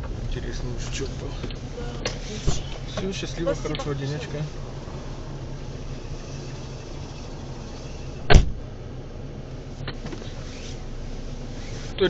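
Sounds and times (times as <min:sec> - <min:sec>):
car door slamming: 0:00.0 - 0:04.0, 0:08.2 - 0:08.8
car engine idling: 0:00.0 - 0:12.0.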